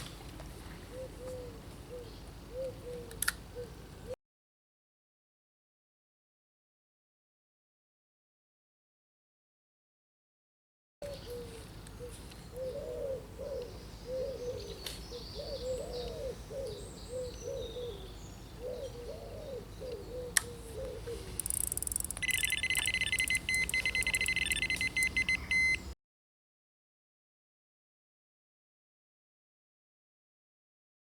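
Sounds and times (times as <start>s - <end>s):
pigeon cooing: 0.9s - 4.2s, 11.0s - 25.8s
small birds chirping: 11.0s - 25.9s
bite alarm beeping rapidly: 21.4s - 25.9s.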